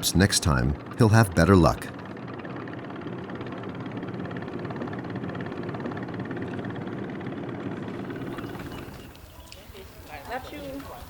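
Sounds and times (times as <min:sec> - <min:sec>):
engine drone: 0:00.0 - 0:09.3.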